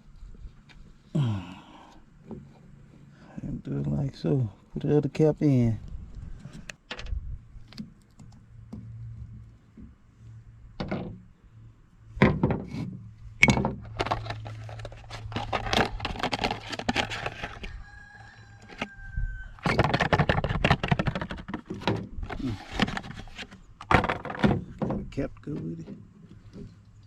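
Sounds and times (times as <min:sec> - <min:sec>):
low steady hum: 0:00.0 - 0:19.7.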